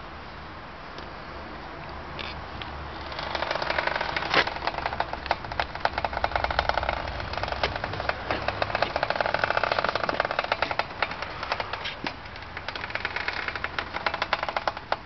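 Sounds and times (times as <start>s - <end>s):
car wheels clicking and rasping: 3.0s - 15.0s.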